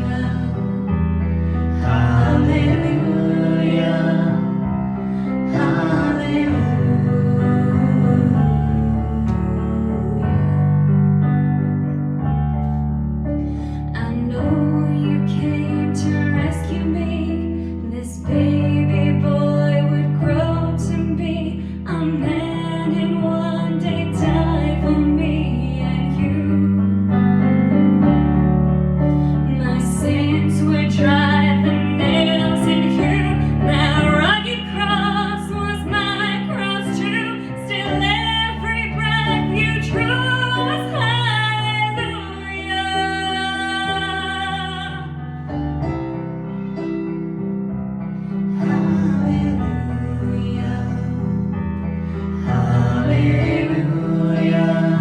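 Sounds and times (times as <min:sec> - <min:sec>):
piano music: 0:00.0 - 0:55.0.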